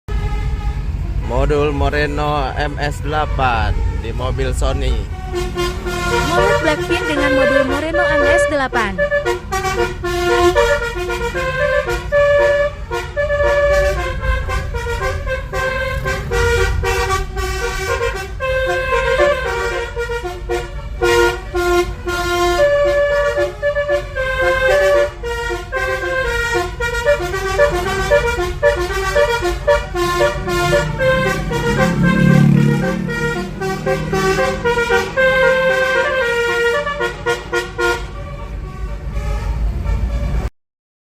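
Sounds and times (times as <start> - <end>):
multi-tone horn playing a tune: 4.8 - 40.5.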